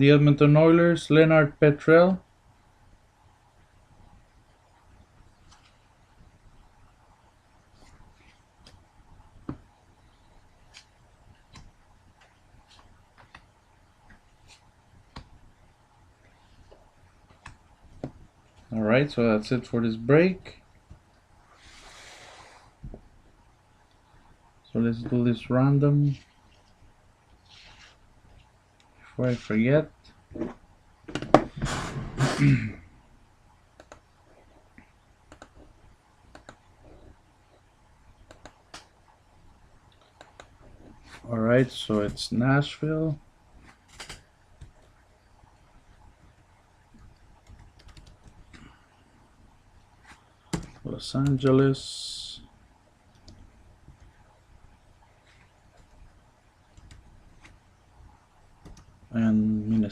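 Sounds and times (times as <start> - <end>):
trading cards set on table: 5.3 - 6.0, 7.7 - 20.1, 20.9 - 23.0, 24.7 - 30.7
breathy exhale: 21.6 - 22.8
sharp clicks: 33.8 - 34.0.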